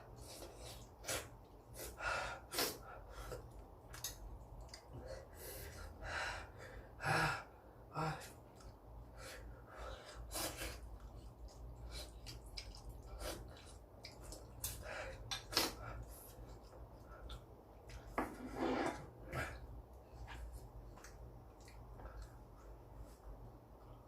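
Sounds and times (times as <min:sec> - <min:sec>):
utensils scraping a bowl: 0:18.2 - 0:19.1.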